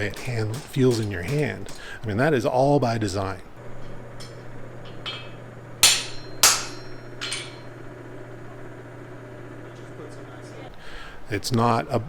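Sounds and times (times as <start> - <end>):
hammer ringing on metal: 0.0 - 1.8, 5.0 - 7.8.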